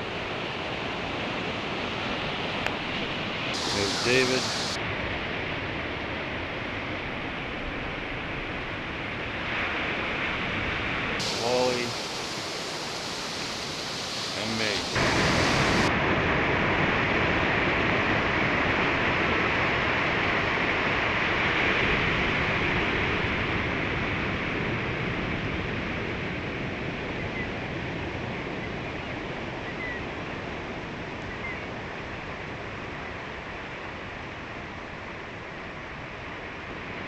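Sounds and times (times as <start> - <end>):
ocean waves breaking on beach: 0.0 - 6.1, 7.4 - 27.1.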